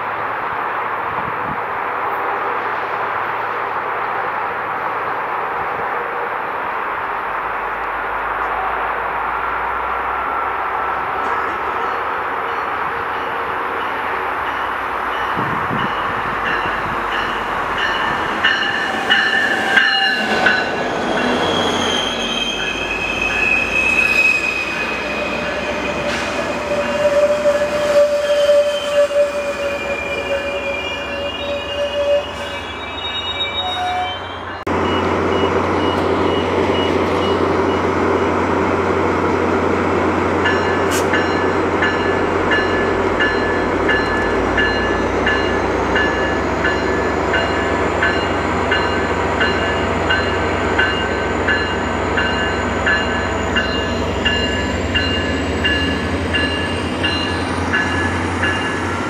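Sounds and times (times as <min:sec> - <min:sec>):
train wheels rumbling on rail: 0:00.0 - 0:33.6, 0:34.4 - 0:59.0
high wheel squeal: 0:15.2 - 0:37.4.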